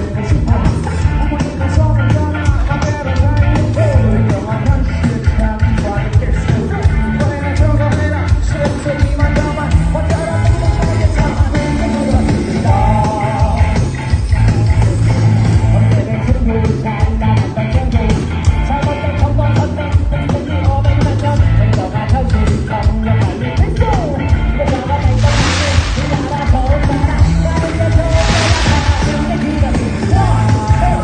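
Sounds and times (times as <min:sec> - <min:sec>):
bass: 0:00.0 - 0:31.0
rock song with singing: 0:00.0 - 0:31.0
drum beat: 0:25.2 - 0:30.4.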